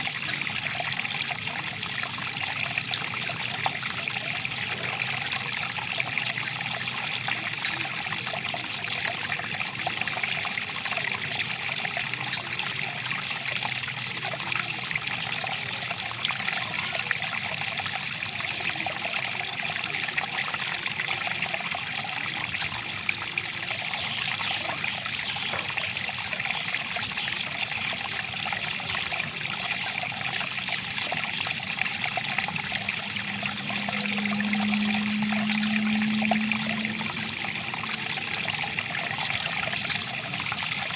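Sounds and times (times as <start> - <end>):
stream water trickling: 0.0 - 40.9
low steady hum: 31.8 - 40.3.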